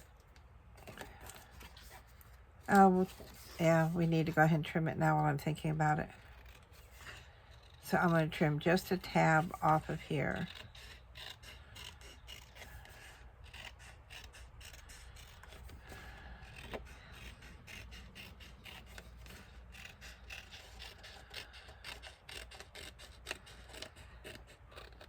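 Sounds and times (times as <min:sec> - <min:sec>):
scissors snipping cardstock: 0:06.1 - 0:25.0.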